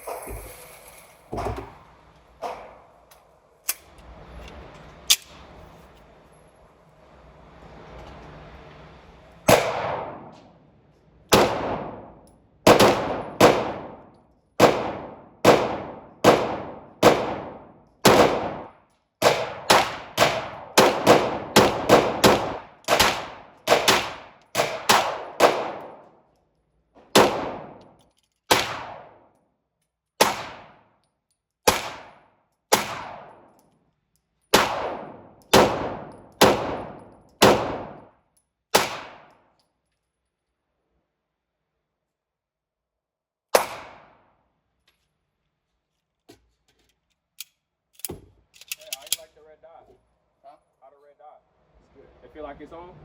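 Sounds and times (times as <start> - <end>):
handgun shots with echo: 38.7 - 39.4, 43.5 - 44.2.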